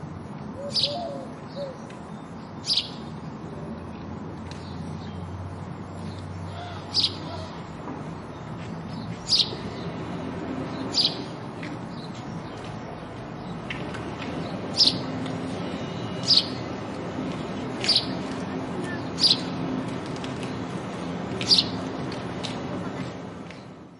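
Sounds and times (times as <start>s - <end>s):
sparrow chirping: 0.6s - 3.2s, 6.0s - 7.6s, 8.2s - 12.7s, 14.4s - 16.8s, 17.6s - 19.6s, 21.4s - 21.9s.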